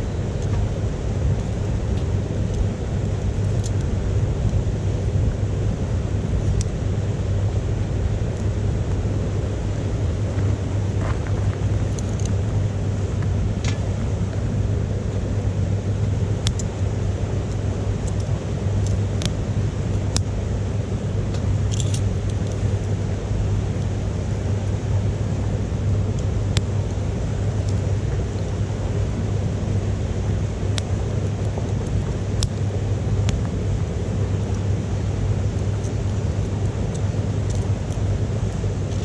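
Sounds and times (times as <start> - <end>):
wood fire crackling and popping: 15.8 - 20.6, 30.0 - 39.0.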